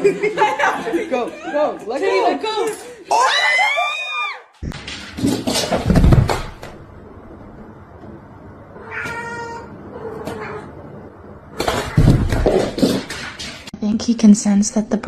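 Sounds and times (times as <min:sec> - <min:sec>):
rustling and knocking: 0:04.6 - 0:06.8, 0:11.6 - 0:13.7
cat meowing: 0:08.8 - 0:10.8.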